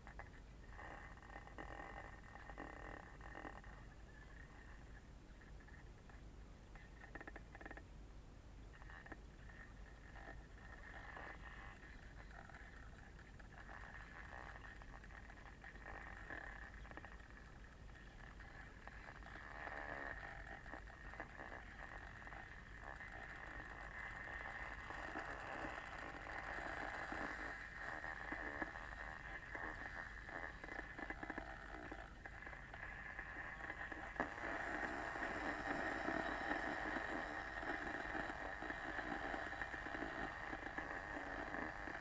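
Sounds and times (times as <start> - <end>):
crackling and ticking: 0.0 - 7.9, 8.7 - 42.0
kettle heating water: 22.9 - 42.0.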